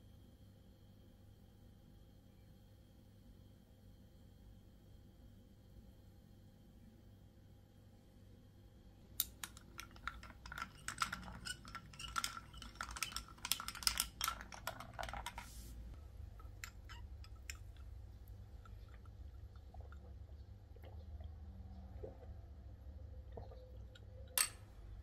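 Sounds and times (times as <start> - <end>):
utensils and dishes clicking: 9.2 - 15.6, 16.4 - 17.9.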